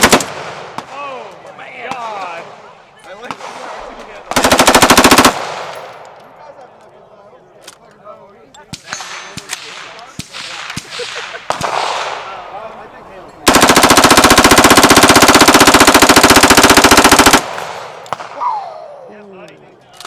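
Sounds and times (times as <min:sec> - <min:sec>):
machine gun firing full-auto burst: 0:00.0 - 0:00.4, 0:04.3 - 0:05.7, 0:13.4 - 0:17.9.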